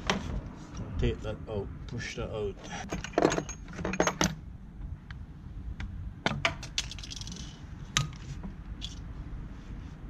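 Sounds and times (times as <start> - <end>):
metal tools clinking: 2.8 - 4.4.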